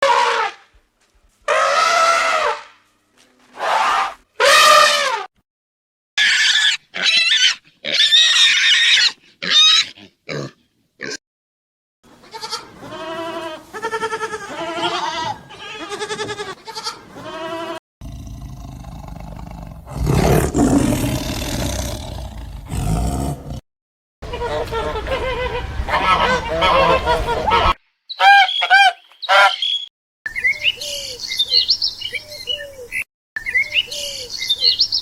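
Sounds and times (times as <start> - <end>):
high-pitched animal cries: 6.2 - 10.0
rough roaring animal call: 18.0 - 23.6
repeated pitched animal calls: 24.2 - 29.8.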